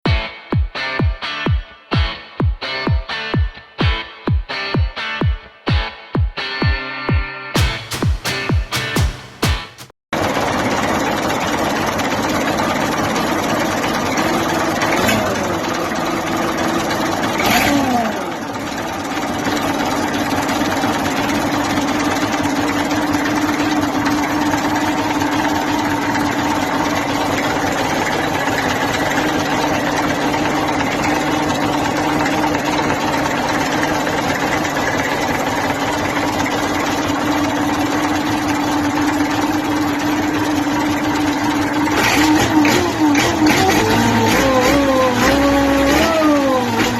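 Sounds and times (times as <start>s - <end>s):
tractor diesel engine running: 10.2s - 46.9s.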